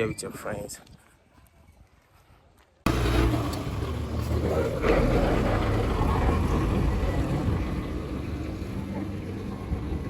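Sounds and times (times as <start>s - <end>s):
low rumble of road vehicles: 2.9s - 10.0s
wind buffeting microphone: 3.8s - 10.0s.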